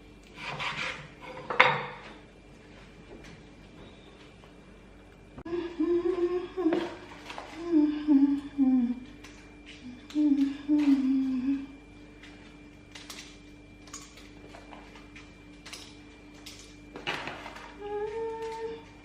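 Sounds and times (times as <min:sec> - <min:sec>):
woman humming: 0:05.4 - 0:11.9, 0:17.7 - 0:19.0.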